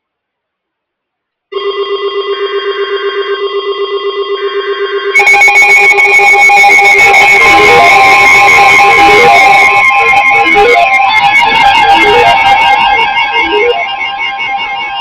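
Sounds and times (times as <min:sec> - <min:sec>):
louder alarm tone: 0:01.6 - 0:15.0
pulsing electronic alarm tone: 0:01.6 - 0:15.0.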